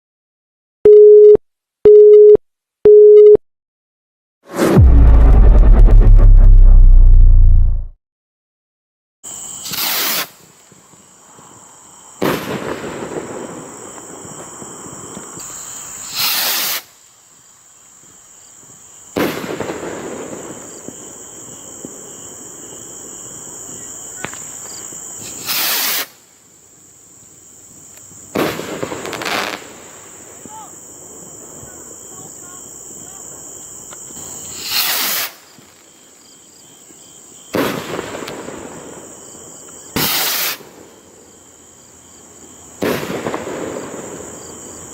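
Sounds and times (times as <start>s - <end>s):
firework rocket whoosh: 4.5s - 6.8s, 9.6s - 10.5s, 15.4s - 17.0s, 34.5s - 35.4s, 40.0s - 40.6s
firework bang echoing: 4.5s - 7.9s, 42.8s - 44.3s
crickets chirping: 9.2s - 44.9s.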